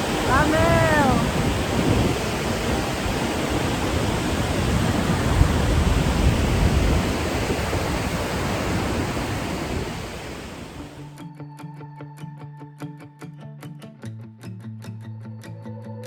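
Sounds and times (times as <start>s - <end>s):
waterfall rushing: 0.0s - 11.1s.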